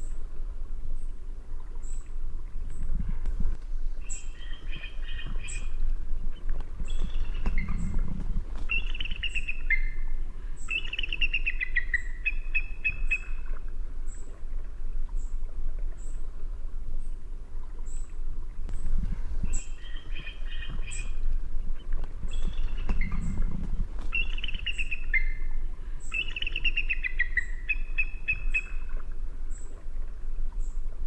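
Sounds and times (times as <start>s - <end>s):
low rumble: 18.7s - 19.8s.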